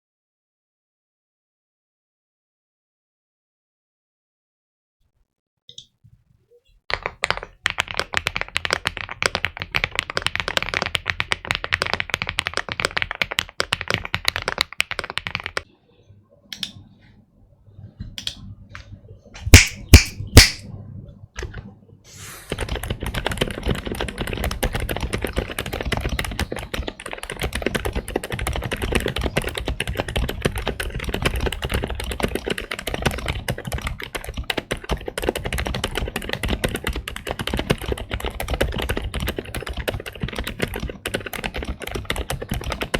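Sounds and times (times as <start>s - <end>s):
mechanical keyboard typing: 6.9s - 15.7s, 22.5s - 42.9s
loud sharp knocks: 19.5s - 20.6s.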